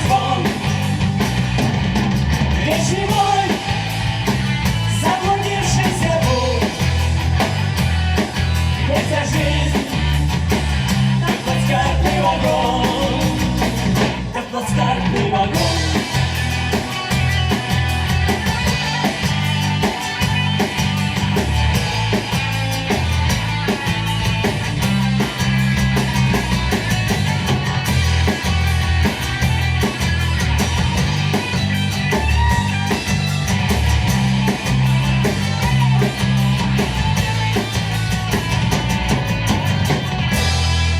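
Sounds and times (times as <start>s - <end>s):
bass guitar: 0.0s - 40.9s
drums: 0.0s - 40.9s
guitars: 0.0s - 40.9s.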